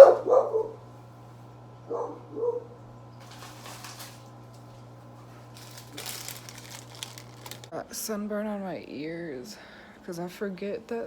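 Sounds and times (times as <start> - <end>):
dog barking: 0.0 - 0.8, 1.9 - 2.8
rustling: 3.2 - 4.3, 5.4 - 7.7.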